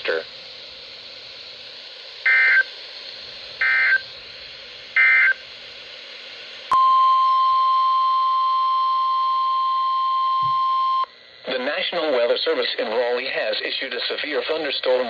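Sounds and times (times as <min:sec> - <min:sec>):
steady attention tone: 0:06.7 - 0:12.2.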